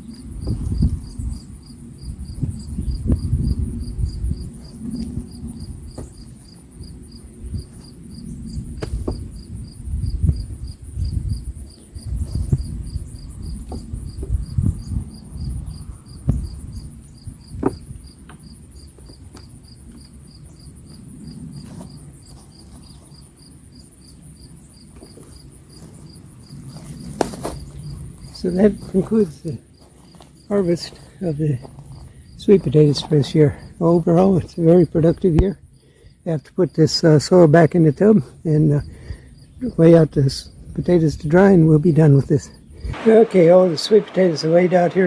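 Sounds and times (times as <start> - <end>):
crickets chirping: 0.0 - 45.0.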